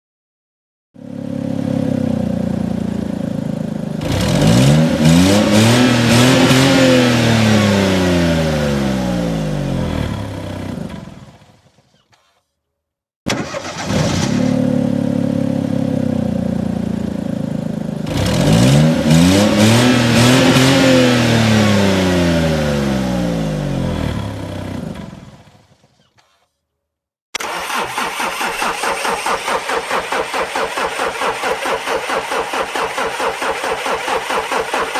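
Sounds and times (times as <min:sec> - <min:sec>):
car engine idling with throb: 0:01.0 - 0:05.8, 0:14.3 - 0:19.0
car engine revving: 0:04.0 - 0:11.2, 0:18.0 - 0:25.4.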